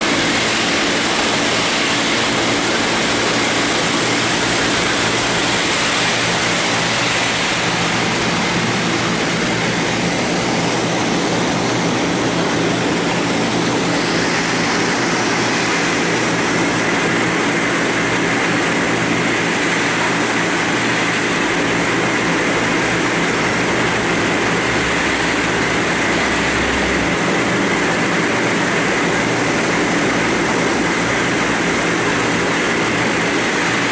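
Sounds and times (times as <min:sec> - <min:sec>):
grinding hiss: 0:00.0 - 0:33.9
machine hum: 0:00.0 - 0:33.9
higher machine tone: 0:21.0 - 0:32.5.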